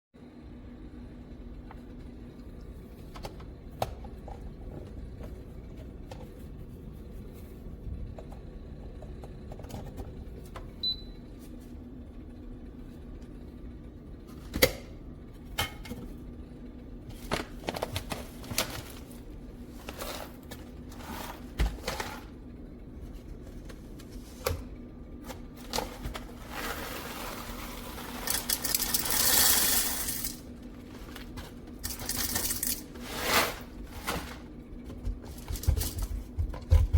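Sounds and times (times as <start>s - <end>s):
faint steady hum: 0.2s - 36.9s.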